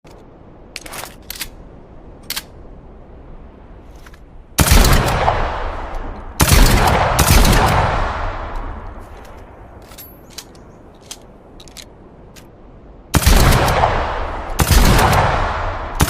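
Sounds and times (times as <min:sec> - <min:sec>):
shotgun shots echoing: 0:04.6 - 0:08.6, 0:13.2 - 0:16.0.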